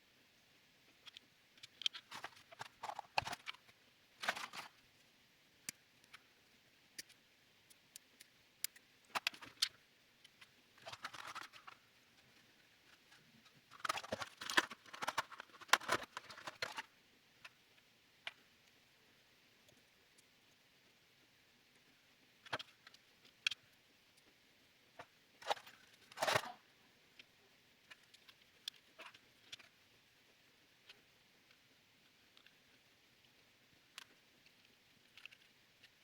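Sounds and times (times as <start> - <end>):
small plastic parts clicking: 1.0 - 4.8, 7.0 - 11.8, 13.7 - 17.6, 22.4 - 23.7, 25.4 - 26.6, 33.9 - 36.0.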